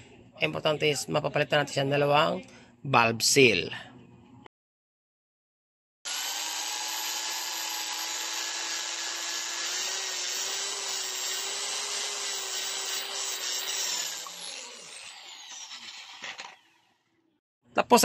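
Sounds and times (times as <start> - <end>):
power tool motor whine: 6.1 - 17.0
gritty valve grinding: 6.4 - 16.8.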